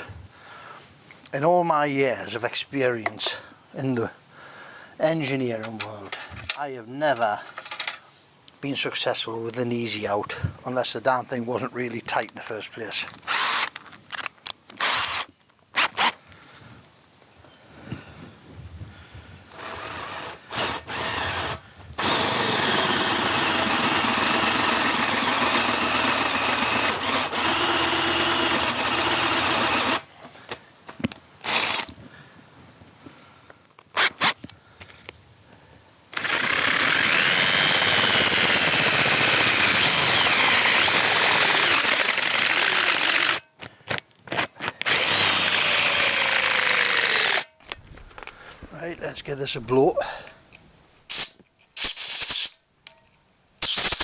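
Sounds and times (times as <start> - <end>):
power drill boring metal: 13.2 - 13.7, 14.8 - 16.1, 19.5 - 30.4, 31.4 - 31.9, 36.2 - 43.7, 44.8 - 47.5.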